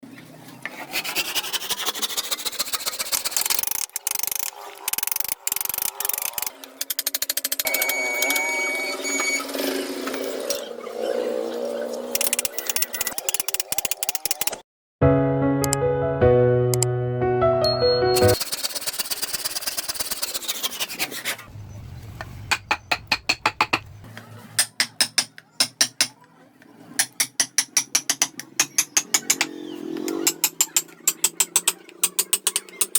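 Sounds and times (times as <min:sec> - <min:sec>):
tool rasping across wood: 0:00.8 - 0:06.5, 0:18.4 - 0:21.5
carving tools rasping wood: 0:00.8 - 0:08.4, 0:18.3 - 0:21.5, 0:24.6 - 0:26.2, 0:27.0 - 0:32.9
carving tools tapping wood: 0:22.5 - 0:23.9, 0:24.6 - 0:26.2, 0:27.0 - 0:32.9.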